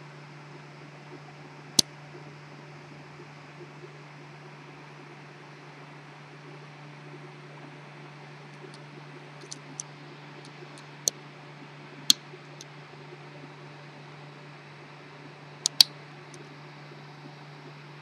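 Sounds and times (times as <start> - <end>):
steady low hum: 0.0 - 18.0
lock pick clicking in padlock: 15.7 - 15.9.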